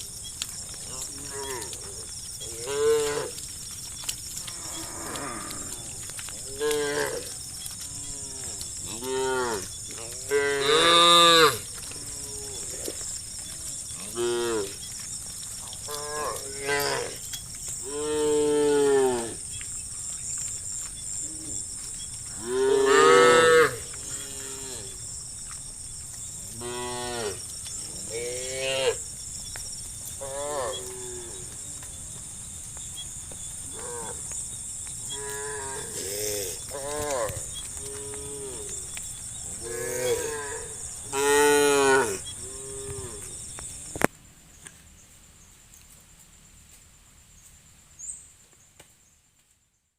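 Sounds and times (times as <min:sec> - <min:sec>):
cows mooing: 0:00.8 - 0:03.4, 0:04.4 - 0:13.0, 0:15.8 - 0:17.2, 0:22.3 - 0:25.0, 0:39.5 - 0:43.3.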